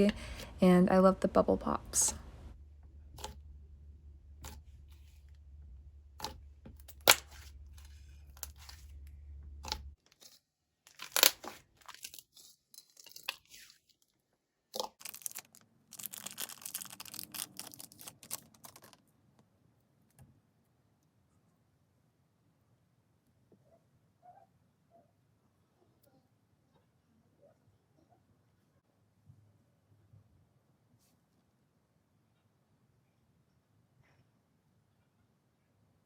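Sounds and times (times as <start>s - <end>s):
sticky slime tearing crackles: 10.9s - 12.2s, 14.8s - 19.0s.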